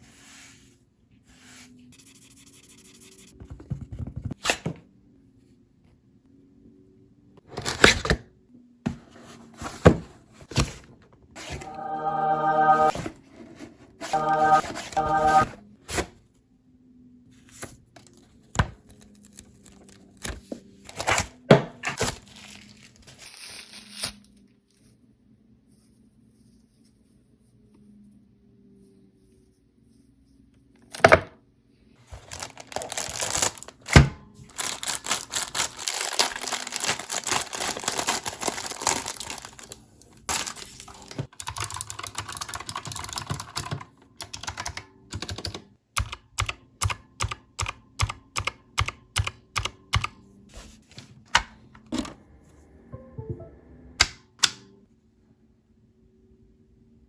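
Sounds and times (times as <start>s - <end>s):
packaging crinkling and tearing: 22.0s - 24.3s, 32.2s - 41.2s.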